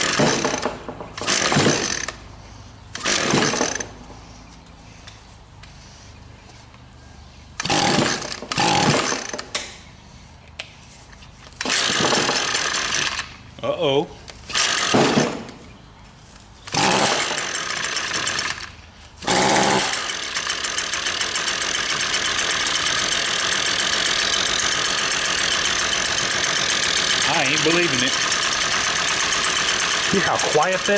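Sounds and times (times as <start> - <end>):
small two-stroke engine sputtering: 0.0 - 2.2, 2.9 - 4.0, 7.6 - 9.6, 11.6 - 13.4, 16.7 - 30.9.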